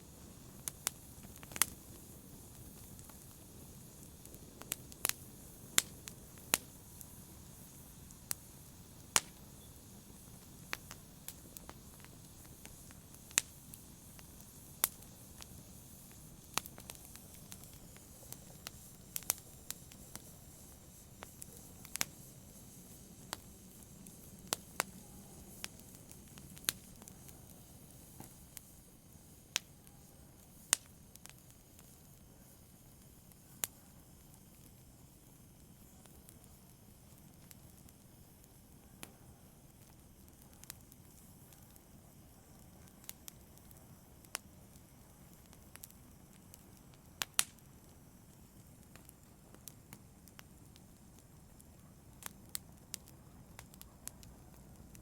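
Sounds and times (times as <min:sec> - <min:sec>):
low hiss of burning: 0:00.0 - 0:55.0
wood fire crackling: 0:00.0 - 0:55.0.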